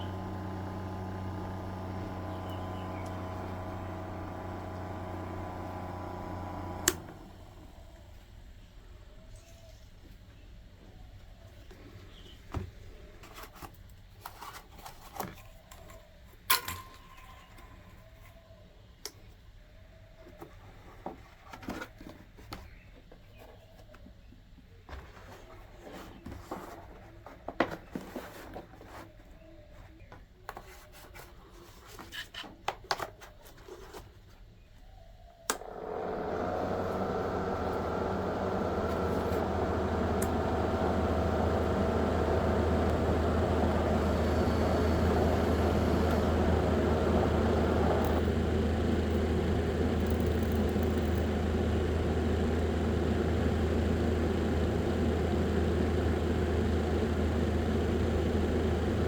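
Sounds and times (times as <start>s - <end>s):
small fan motor humming: 0.0s - 8.3s, 35.4s - 59.0s.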